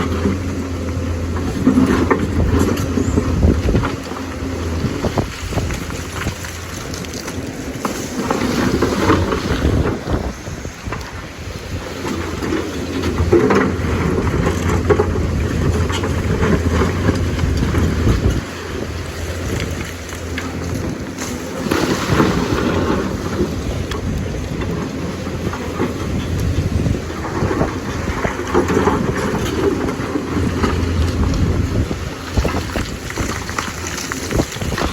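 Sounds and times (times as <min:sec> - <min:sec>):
excavator diesel engine under load: 0:00.0 - 0:34.9
machine clattering and rumbling: 0:00.0 - 0:34.9.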